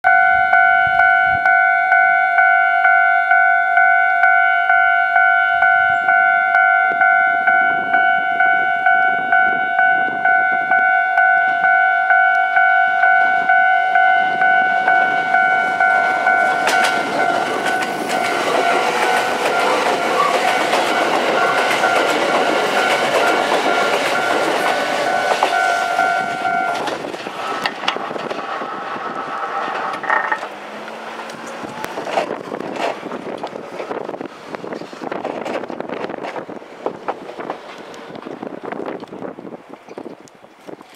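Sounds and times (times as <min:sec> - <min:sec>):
level crossing alarm ringing: 0:00.0 - 0:26.9
train wheel and rail noise: 0:00.0 - 0:40.9.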